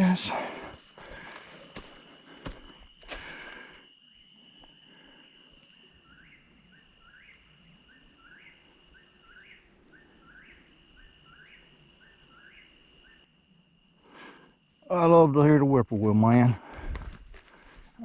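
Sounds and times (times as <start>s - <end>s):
high insect drone: 0.0s - 18.0s
bird singing: 5.7s - 13.3s.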